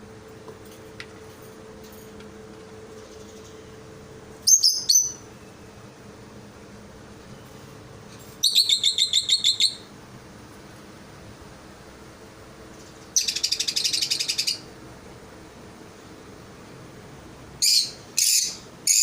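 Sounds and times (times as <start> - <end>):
small bird chirping: 2.9 - 3.7, 4.4 - 5.5, 8.4 - 9.9, 12.7 - 14.7, 17.6 - 19.0.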